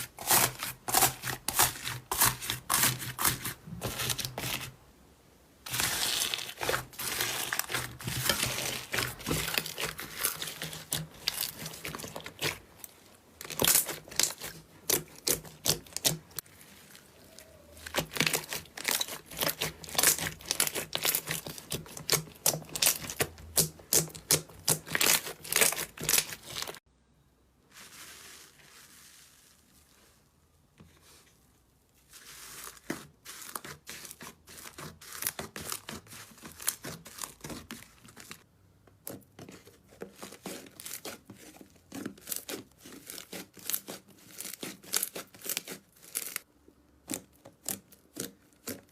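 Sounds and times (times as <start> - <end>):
slime being squeezed crackling: 5.7 - 12.6, 13.4 - 26.8.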